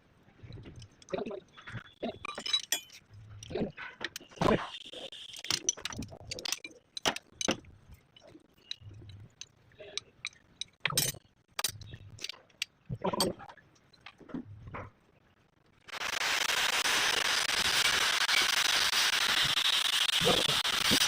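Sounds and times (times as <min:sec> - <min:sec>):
metal tools clinking: 0:02.1 - 0:03.5, 0:08.6 - 0:14.2.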